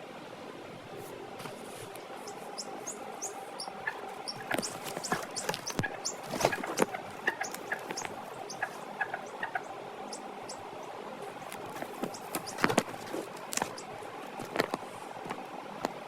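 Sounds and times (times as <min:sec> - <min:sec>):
chicks peeping: 0:01.5 - 0:14.1.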